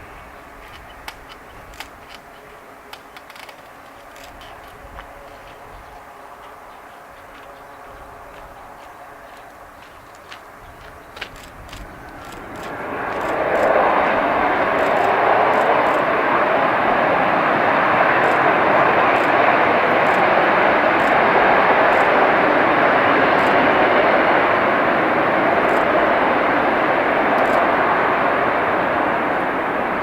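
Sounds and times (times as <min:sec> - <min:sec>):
jet engines roaring: 0:00.0 - 0:30.0.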